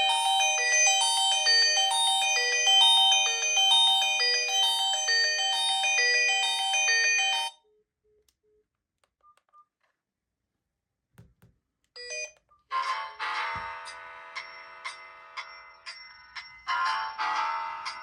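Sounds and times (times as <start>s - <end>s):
phone ringtone melody: 0.0s - 7.6s, 12.0s - 18.0s.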